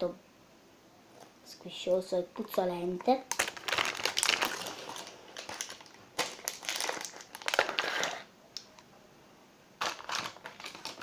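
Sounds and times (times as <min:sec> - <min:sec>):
slime squelching and crackling: 0:02.5 - 0:08.2.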